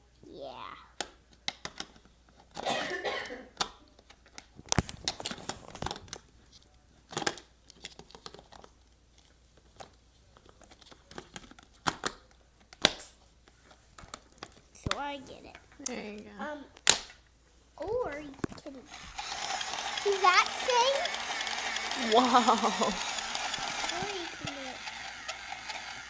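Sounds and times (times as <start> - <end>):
mixer parts clicking and rustling: 3.5 - 12.9, 17.8 - 26.0.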